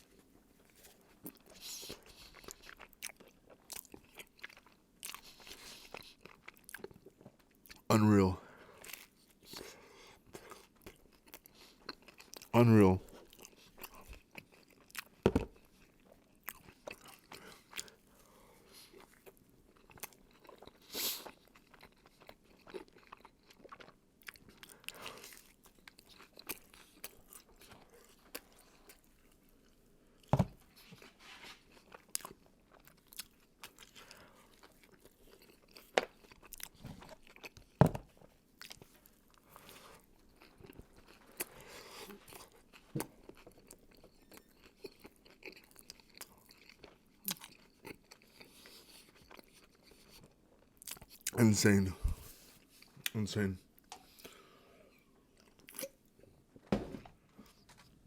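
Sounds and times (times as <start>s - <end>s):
crunchy food chewing: 0.0s - 7.9s, 8.7s - 12.5s, 13.1s - 51.4s, 53.8s - 56.3s.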